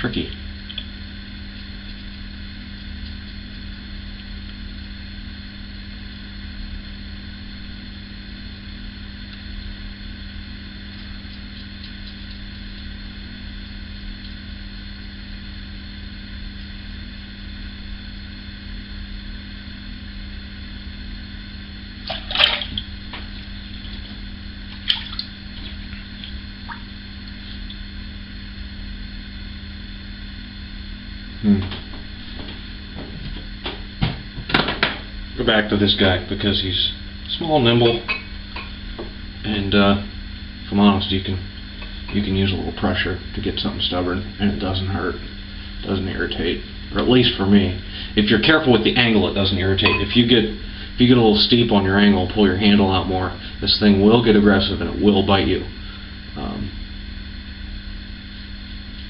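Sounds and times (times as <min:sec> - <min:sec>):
electrical hum: 0:00.0 - 0:59.0
constant hiss: 0:30.7 - 0:57.0.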